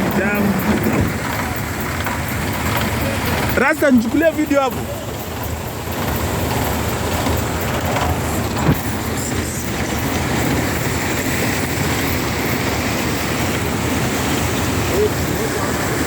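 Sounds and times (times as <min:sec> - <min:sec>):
floodwater rushing: 0:00.0 - 0:16.0.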